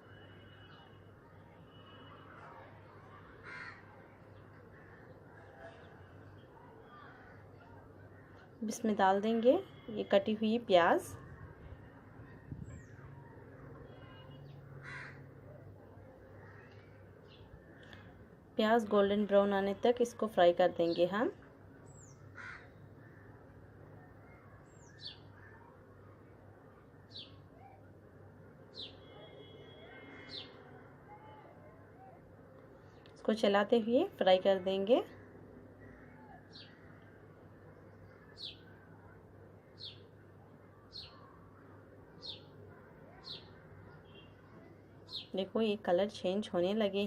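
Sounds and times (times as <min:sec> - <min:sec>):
faint bird chirps: 0:00.0 - 0:08.6, 0:11.1 - 0:18.2, 0:21.9 - 0:26.3, 0:28.7 - 0:33.1, 0:35.2 - 0:45.4
faint background noise: 0:00.0 - 0:47.0
bird chirping: 0:28.7 - 0:30.6, 0:42.2 - 0:45.5
low steady background hiss: 0:30.4 - 0:47.0.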